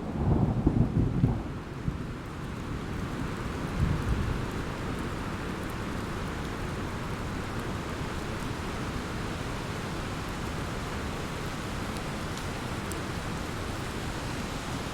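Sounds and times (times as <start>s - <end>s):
thunder rumbling: 0.0s - 2.0s
rain hiss: 1.3s - 14.9s.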